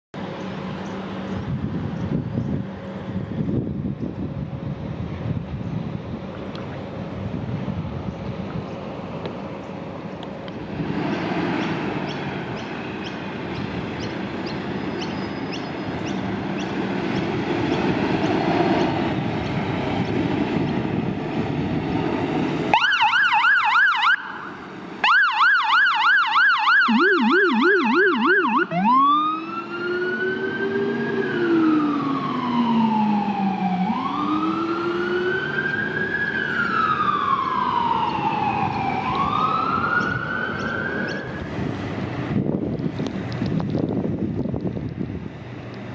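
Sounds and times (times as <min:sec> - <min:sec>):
electronic siren yelp and wail: 0:22.7 - 0:41.3
low-pitched siren tone: 0:22.8 - 0:41.3
heavy engine running: 0:35.4 - 0:45.9.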